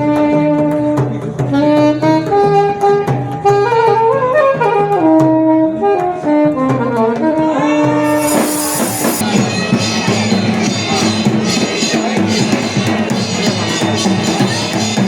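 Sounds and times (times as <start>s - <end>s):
short hissing cymbal crash: 8.0s - 9.3s
drums: 8.0s - 15.0s.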